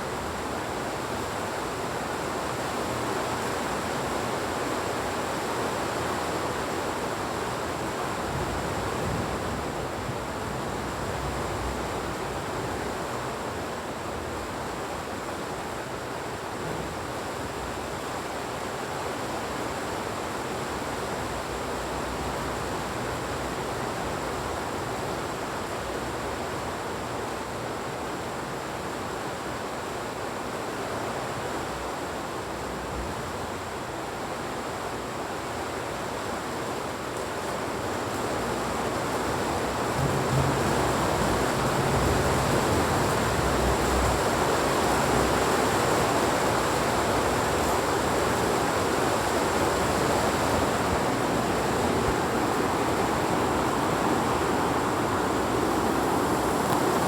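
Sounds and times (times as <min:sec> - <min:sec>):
heavy rain hissing: 0:37.6 - 0:57.0.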